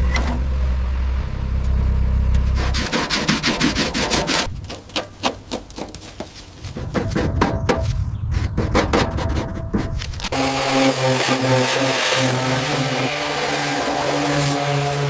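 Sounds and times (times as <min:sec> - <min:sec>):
low hum: 0:00.0 - 0:03.0.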